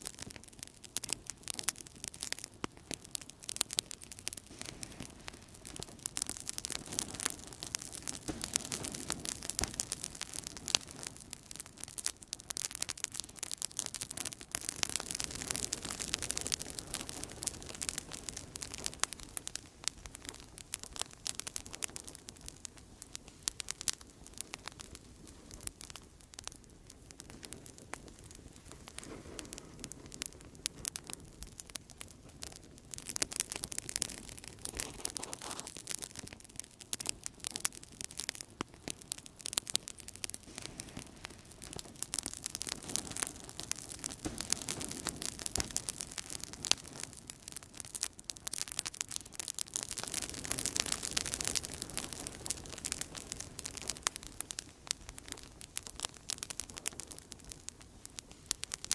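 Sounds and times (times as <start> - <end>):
campfire crackling: 0.0 - 58.9.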